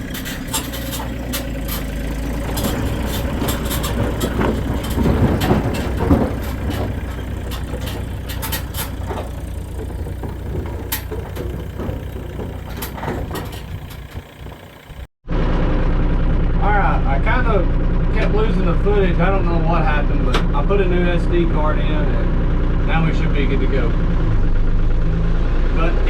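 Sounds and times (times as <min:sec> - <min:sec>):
wood clicking and cracking: 0:00.0 - 0:15.1
excavator engine running: 0:00.0 - 0:26.0.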